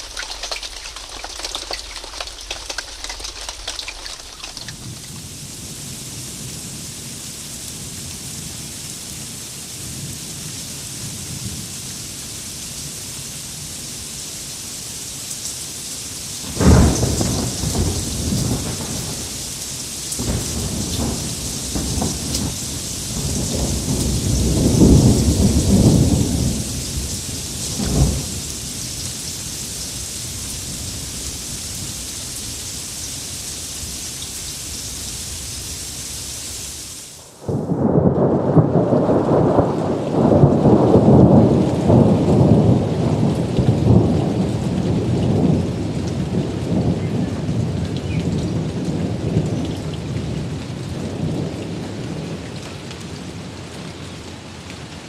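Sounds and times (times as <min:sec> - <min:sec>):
heavy rain hiss: 0:00.0 - 0:52.5
sharp thunderclap: 0:16.4 - 0:19.6, 0:20.2 - 0:28.7, 0:37.4 - 0:45.7
rolling thunder: 0:16.4 - 0:29.2, 0:37.4 - 0:50.5.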